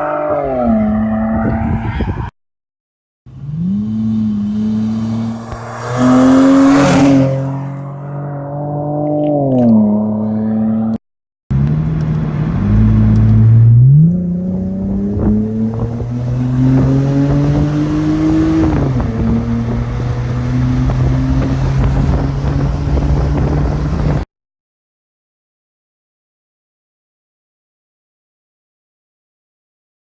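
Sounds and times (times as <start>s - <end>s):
car engine exhaust revving: 3.3s - 10.3s, 11.5s - 24.2s.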